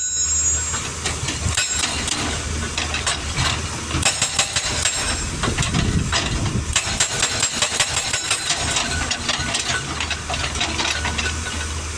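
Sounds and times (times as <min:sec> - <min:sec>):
diesel engine running: 0:00.2 - 0:11.9
hydraulic rock breaker hammering rock: 0:00.4 - 0:11.9.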